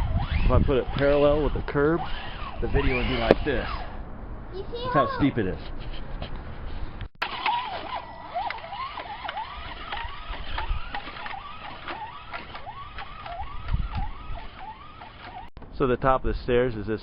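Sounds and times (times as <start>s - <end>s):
electric motor whining: 0.0s - 4.0s, 7.2s - 15.5s.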